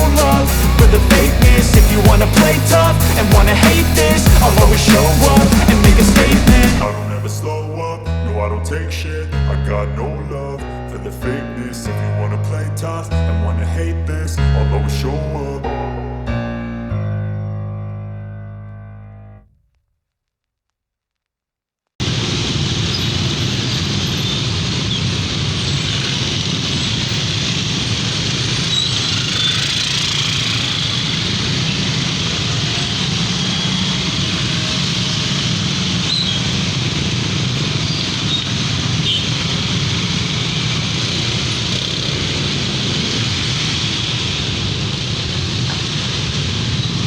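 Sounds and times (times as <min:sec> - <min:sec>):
vehicle engines humming: 0:00.0 - 0:07.8, 0:22.8 - 0:47.0
rain hiss on road: 0:22.0 - 0:47.0.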